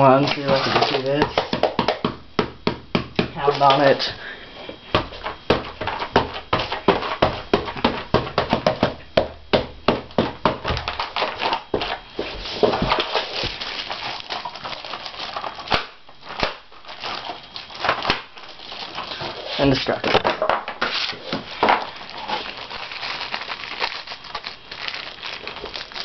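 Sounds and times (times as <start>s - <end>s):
fists pounding rubber keyboard: 1.0s - 3.4s, 4.9s - 12.0s.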